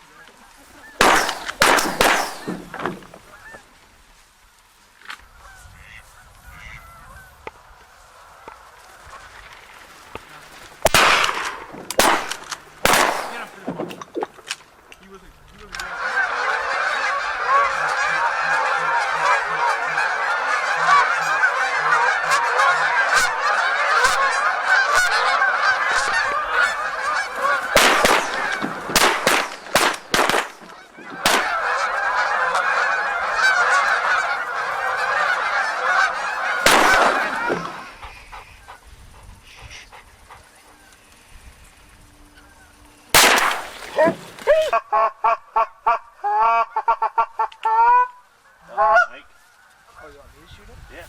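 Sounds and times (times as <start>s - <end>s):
flock of geese honking: 0.0s - 14.0s, 14.9s - 50.9s
sharp bangs: 1.0s - 3.2s, 10.8s - 14.1s, 27.7s - 31.8s, 36.6s - 37.9s, 43.2s - 44.4s.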